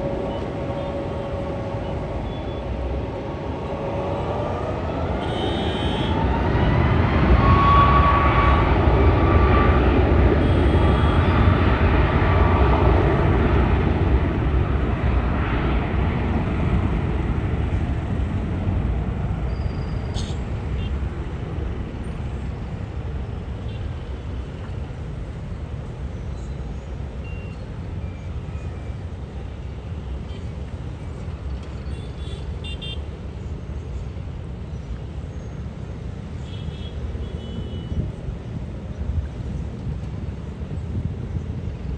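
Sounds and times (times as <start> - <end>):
high engine whine: 0.0 - 32.3
aircraft engines rumbling: 0.0 - 41.9.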